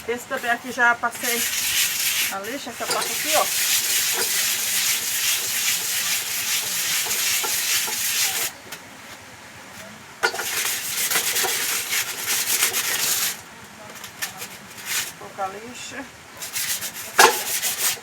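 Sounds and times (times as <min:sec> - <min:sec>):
sandpaper rubbing: 0:00.3 - 0:08.6, 0:10.2 - 0:13.4, 0:14.2 - 0:15.2, 0:16.4 - 0:18.0.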